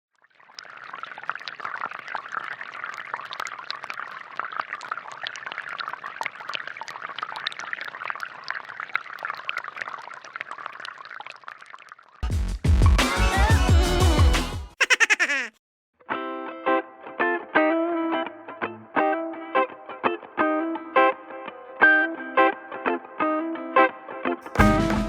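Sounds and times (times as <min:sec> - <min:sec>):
water drips and plinks: 0:00.1 - 0:12.2
water trickling and splashing: 0:00.1 - 0:12.2
music: 0:12.2 - 0:14.8, 0:16.1 - 0:25.0.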